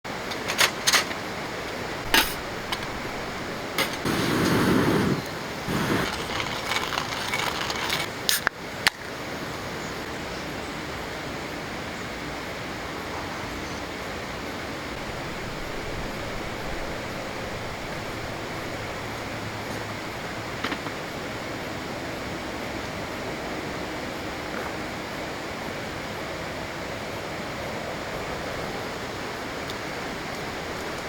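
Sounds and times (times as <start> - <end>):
clinking and handling noise: 0.1 - 9.1.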